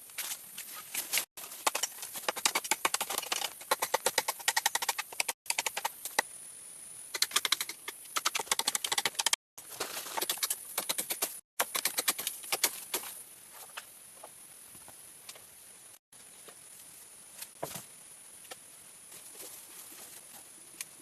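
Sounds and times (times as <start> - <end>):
rapid irregular clicking: 1.6 - 6.2, 7.2 - 9.4.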